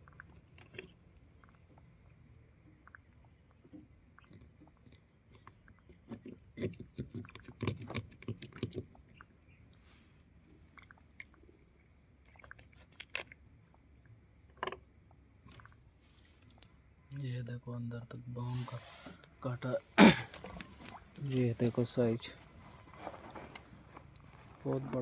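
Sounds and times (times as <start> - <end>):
crackling clicks and rustles: 0.0 - 16.8, 20.3 - 25.0.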